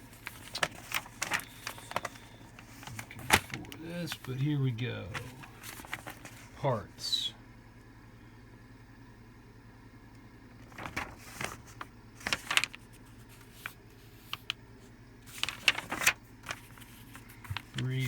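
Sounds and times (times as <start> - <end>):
paper pages rustling: 0.0 - 6.6, 10.6 - 14.6, 15.2 - 18.0
steady low hum: 0.0 - 18.0.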